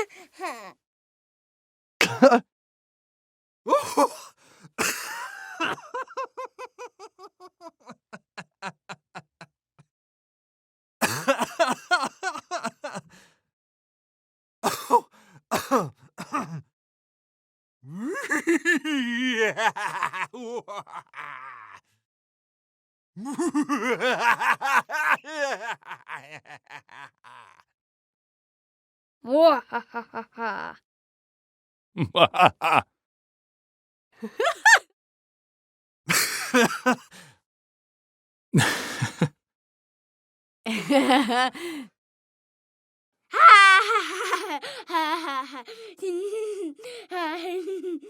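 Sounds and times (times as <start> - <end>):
person laughing: 2.0 - 2.4, 3.7 - 9.5, 11.0 - 13.0, 17.9 - 21.8, 23.2 - 27.6, 32.0 - 32.8, 34.2 - 34.8, 36.1 - 37.0, 38.6 - 39.3, 40.7 - 41.9, 43.4 - 48.0.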